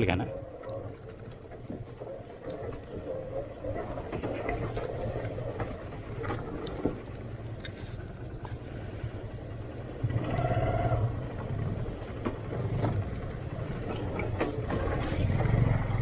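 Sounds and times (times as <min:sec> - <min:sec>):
motorcycle engine at low revs: 0:00.0 - 0:16.0.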